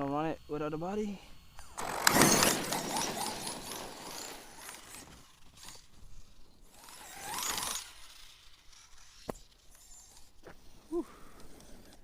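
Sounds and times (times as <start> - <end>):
rc buggy clicking crunching drivetrain: 1.5 - 10.4.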